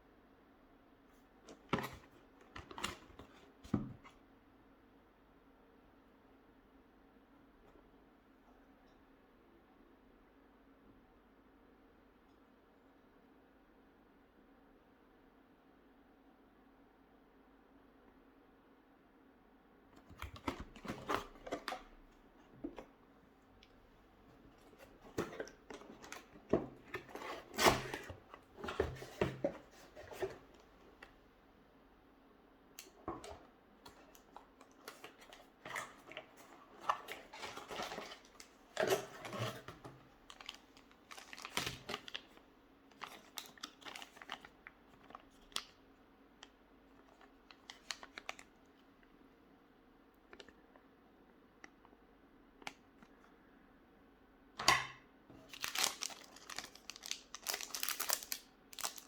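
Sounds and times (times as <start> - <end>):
packaging clicking and rustling: 24.5 - 30.7, 33.1 - 45.7, 47.0 - 48.5, 55.4 - 59.0.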